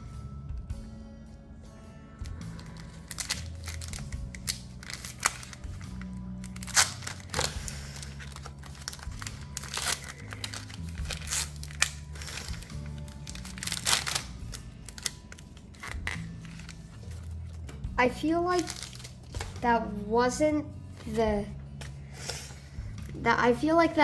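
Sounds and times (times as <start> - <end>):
soft background music: 0.0 - 24.0
foil wrapper crinkling and tearing: 2.2 - 17.7, 18.4 - 19.6.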